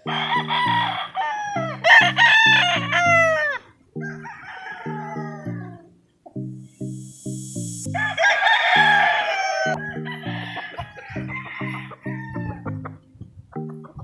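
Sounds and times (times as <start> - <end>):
rooster crowing: 0.0 - 5.9, 8.0 - 12.6
background music with bass line: 0.0 - 14.0
roosters clucking: 8.1 - 14.0.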